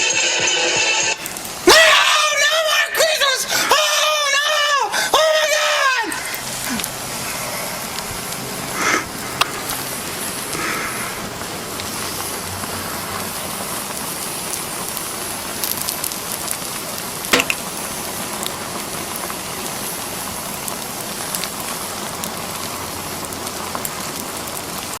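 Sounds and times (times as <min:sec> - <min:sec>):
fire crackling: 0:01.1 - 0:25.0
fire pops and snaps: 0:13.8 - 0:19.8.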